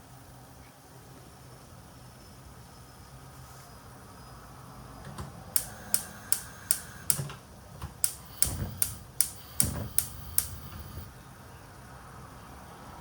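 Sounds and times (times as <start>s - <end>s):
sharp kitchen clicks: 5.6s - 11.1s.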